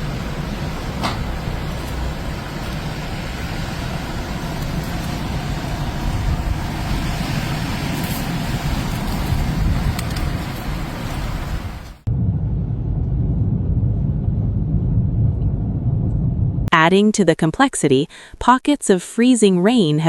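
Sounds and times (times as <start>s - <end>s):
traffic rumble and road noise: 0.0s - 12.3s.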